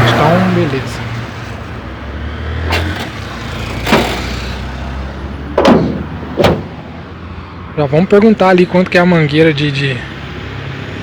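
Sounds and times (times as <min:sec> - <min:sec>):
car engine idling: 0:02.7 - 0:07.4
sharp knocks: 0:03.8 - 0:04.4, 0:05.6 - 0:07.0.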